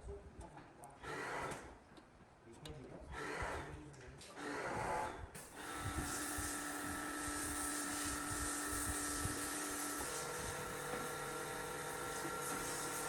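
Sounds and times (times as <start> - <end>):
small electric motor whining: 4.5 - 13.0
hiss: 5.7 - 13.0.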